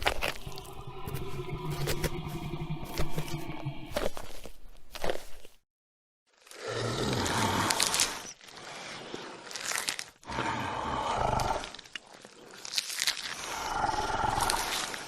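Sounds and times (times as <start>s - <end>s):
dinosaur roars: 0.0s - 4.2s, 10.3s - 11.8s, 13.5s - 15.0s.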